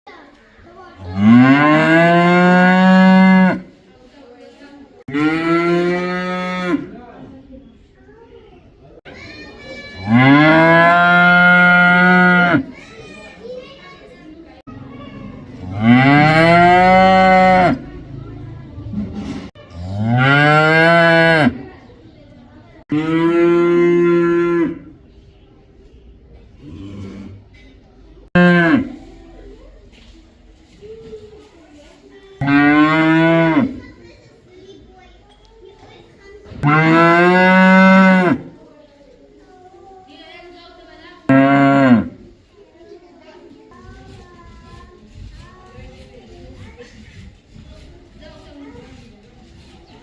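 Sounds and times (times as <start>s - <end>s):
cow mooing: 1.2s - 3.6s, 10.1s - 12.6s, 15.7s - 17.8s, 22.9s - 24.9s.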